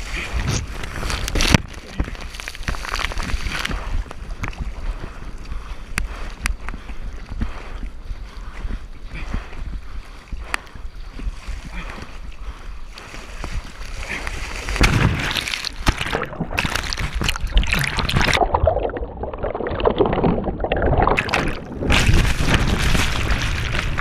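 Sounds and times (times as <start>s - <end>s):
wind buffeting microphone: 3.2s - 14.8s, 19.8s - 24.0s.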